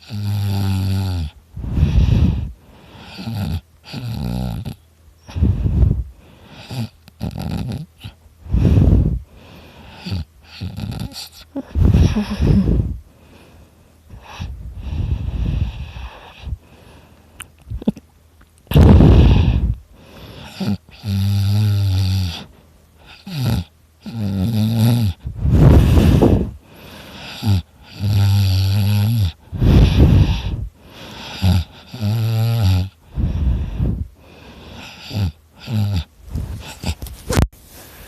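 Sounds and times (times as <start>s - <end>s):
man snoring loudly: 0.0s - 4.8s, 6.6s - 7.9s, 10.0s - 11.3s, 20.4s - 22.5s, 23.1s - 26.4s, 27.2s - 34.0s, 34.8s - 37.0s.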